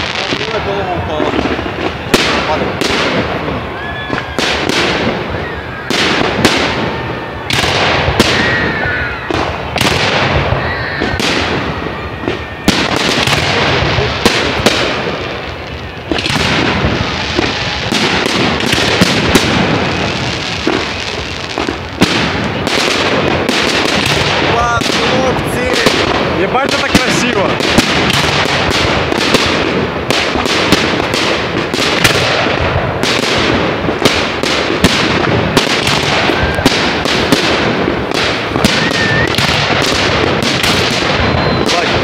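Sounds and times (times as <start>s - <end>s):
fireworks bursts and bangs: 0.0s - 42.0s
faint firework whistle: 3.5s - 13.4s, 35.9s - 37.2s, 38.6s - 39.8s, 40.6s - 42.0s.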